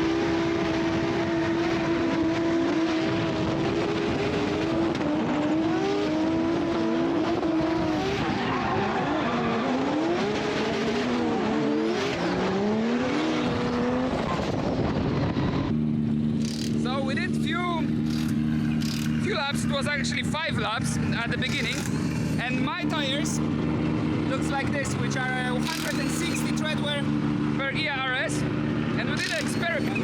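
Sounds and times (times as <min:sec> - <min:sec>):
car engine revving: 0:00.0 - 0:30.0
tyres squealing: 0:21.4 - 0:23.4, 0:24.9 - 0:27.0, 0:29.1 - 0:30.0.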